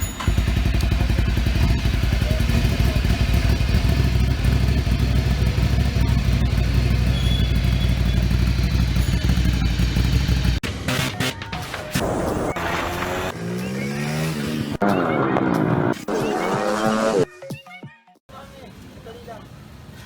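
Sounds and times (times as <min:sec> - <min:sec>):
motorcycle engine idling: 0:00.0 - 0:10.6.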